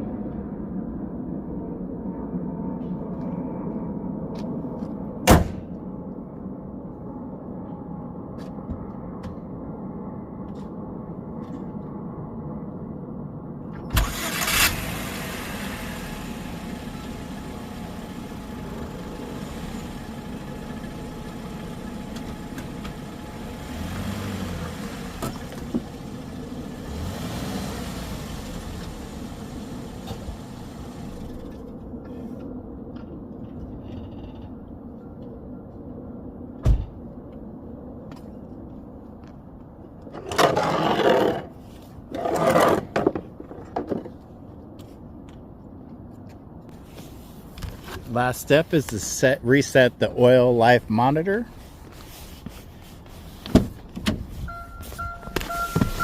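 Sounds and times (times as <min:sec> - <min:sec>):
car engine starting and running: 0:13.7 - 0:32.0, 0:53.1 - 0:56.0.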